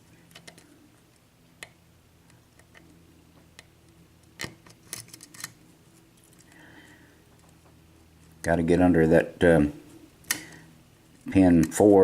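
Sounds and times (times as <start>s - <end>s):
lock pick clicking and scraping: 4.2s - 5.6s.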